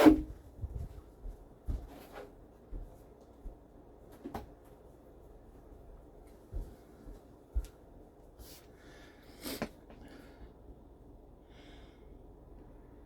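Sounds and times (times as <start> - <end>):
faint knocks and rustles: 0.3 - 5.0.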